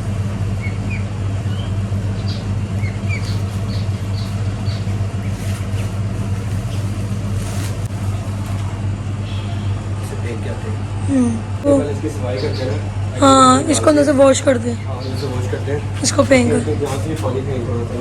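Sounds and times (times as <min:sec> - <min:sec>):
small birds chirping: 0:00.0 - 0:08.5, 0:12.1 - 0:13.0, 0:13.8 - 0:17.3
low machine hum: 0:00.0 - 0:18.0.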